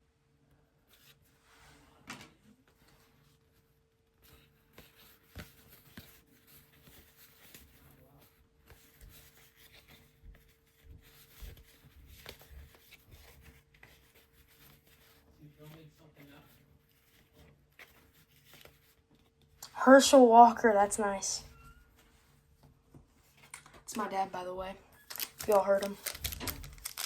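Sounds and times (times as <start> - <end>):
trading cards rustling and tapping: 8.6 - 15.8, 25.0 - 27.0.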